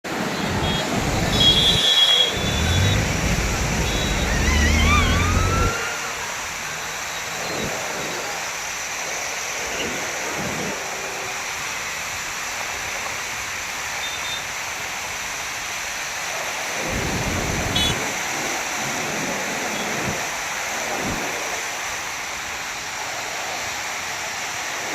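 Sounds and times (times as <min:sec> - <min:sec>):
floodwater rushing: 0:00.1 - 0:24.9
vehicle passing rumble: 0:00.5 - 0:06.7
short gliding tones: 0:01.0 - 0:06.3.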